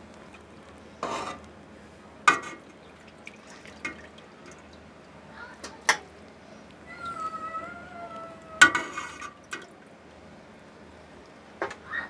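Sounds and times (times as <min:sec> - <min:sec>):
liquid dripping and splashing: 0:02.3 - 0:06.8, 0:08.1 - 0:10.2.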